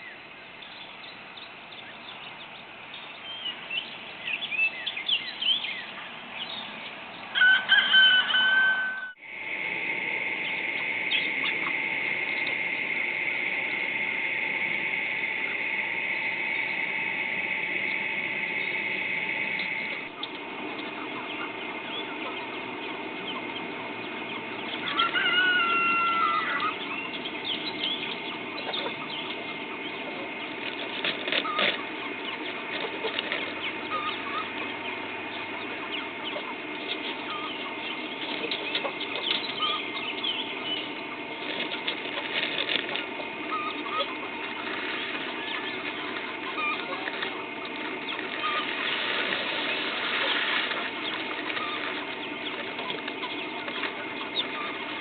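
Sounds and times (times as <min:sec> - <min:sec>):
chickens clucking: 0:00.0 - 0:55.0
steady hissing rushing noise: 0:09.2 - 0:24.9, 0:40.2 - 0:55.0
wings flapping: 0:28.2 - 0:39.9, 0:40.5 - 0:55.0.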